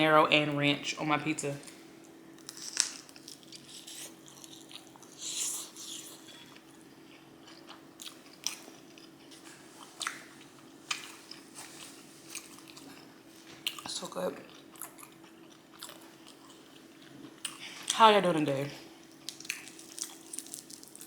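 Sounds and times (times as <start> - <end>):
chewing with mouth clicks: 2.5 - 13.9, 14.5 - 17.8, 19.1 - 21.0.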